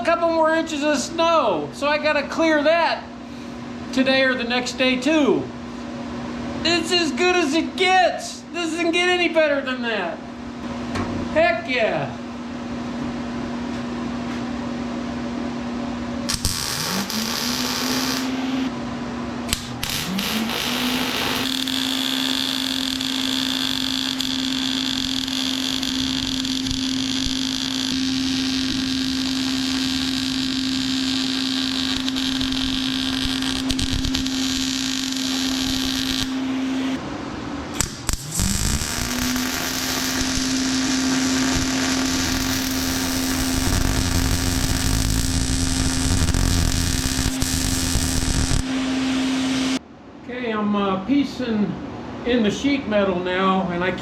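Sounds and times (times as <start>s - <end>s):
motor hum: 16.2s - 18.8s, 19.4s - 37.0s, 37.7s - 49.8s
harsh welding hiss and crackle: 16.3s - 18.7s, 19.5s - 36.4s, 37.8s - 48.7s.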